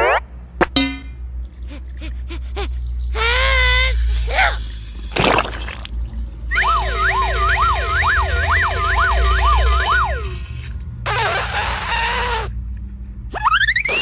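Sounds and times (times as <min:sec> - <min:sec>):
warbling siren-like tone: 0:00.0 - 0:00.3, 0:06.4 - 0:10.6
hiss with falling tone: 0:06.6 - 0:12.5.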